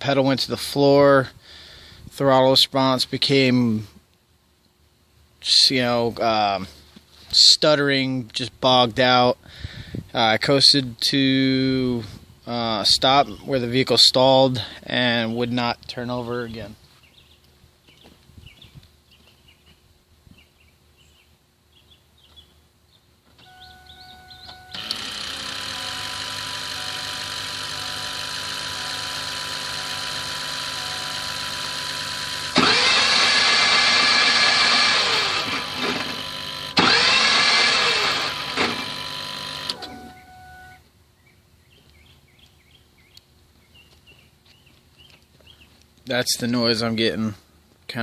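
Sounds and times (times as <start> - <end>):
electrical hum with whine: 23.3 - 42.2
starter motor whirring: 24.4 - 40.8.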